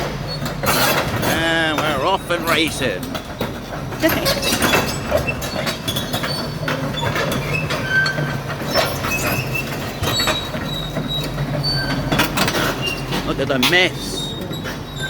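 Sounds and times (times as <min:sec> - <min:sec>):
pile driver engine running: 0:01.2 - 0:03.2
metal tracks squeaking and clanking: 0:04.4 - 0:13.3, 0:14.1 - 0:15.0.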